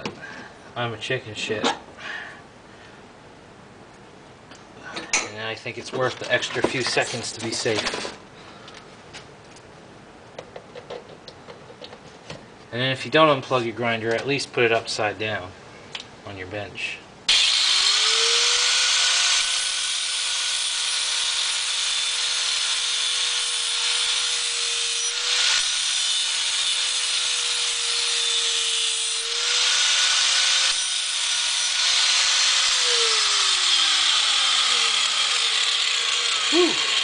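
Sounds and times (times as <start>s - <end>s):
angle grinder grinding metal: 17.3s - 37.0s.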